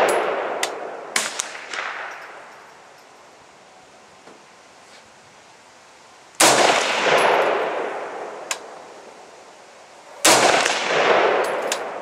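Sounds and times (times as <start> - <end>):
rifle shot with echo: 0.0 - 2.5, 6.4 - 8.7, 10.2 - 12.0
sharp click: 0.1 - 0.8.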